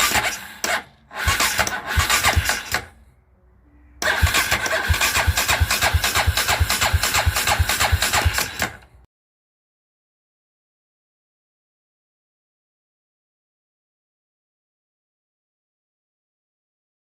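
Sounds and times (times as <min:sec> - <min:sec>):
atv engine cranking: 0:00.0 - 0:03.0, 0:04.0 - 0:09.0.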